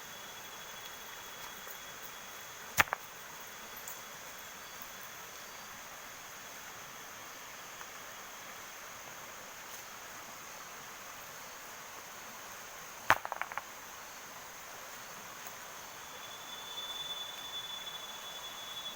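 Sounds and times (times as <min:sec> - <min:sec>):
heavy rain hiss: 0:00.0 - 0:18.9
quick ticks: 0:02.8 - 0:03.0
sharp snap: 0:02.8 - 0:03.0, 0:13.1 - 0:13.6.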